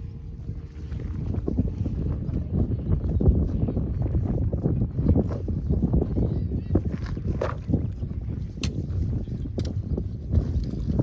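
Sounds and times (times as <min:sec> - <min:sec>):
low steady rumble: 0:00.0 - 0:11.0
campfire crackling and popping: 0:06.8 - 0:11.0.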